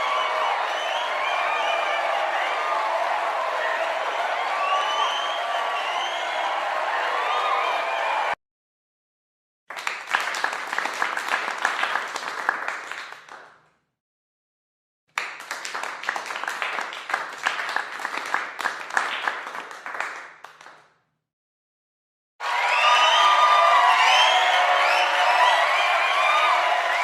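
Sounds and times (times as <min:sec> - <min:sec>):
cheering and whooping: 0:00.0 - 0:08.4, 0:22.4 - 0:27.0
group applause: 0:00.0 - 0:08.4, 0:09.7 - 0:13.6, 0:15.1 - 0:21.0, 0:22.4 - 0:27.0.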